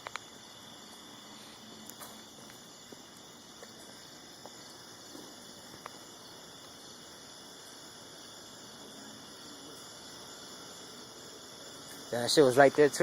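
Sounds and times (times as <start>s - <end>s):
faint ticks and snaps: 0.0s - 0.3s, 1.8s - 6.0s
crickets trilling: 0.0s - 13.0s.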